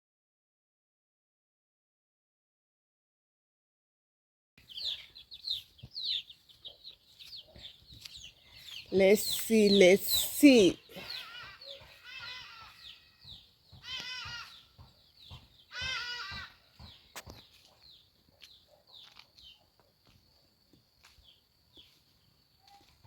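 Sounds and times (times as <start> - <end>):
farm animal wavering cries: 10.9 - 14.6, 15.7 - 16.6
faint chirps: 21.1 - 23.0.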